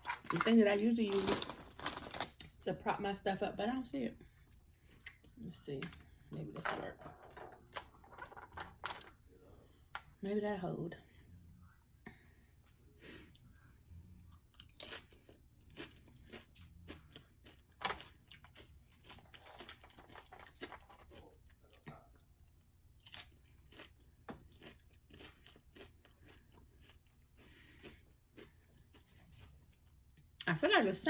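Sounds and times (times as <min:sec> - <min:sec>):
person chewing crunchy chips: 0:00.0 - 0:02.5, 0:14.2 - 0:30.0.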